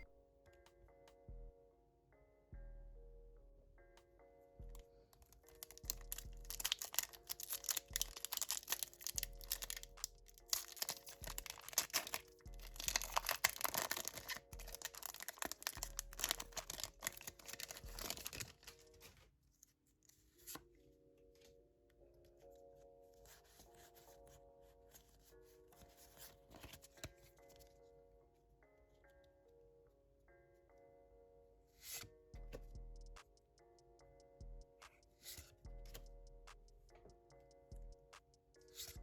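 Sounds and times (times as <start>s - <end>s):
background music: 0.0s - 19.5s, 20.3s - 39.0s
foil wrappers tearing and crinkling: 5.2s - 19.1s
cards being handled: 5.2s - 19.3s, 25.8s - 27.6s.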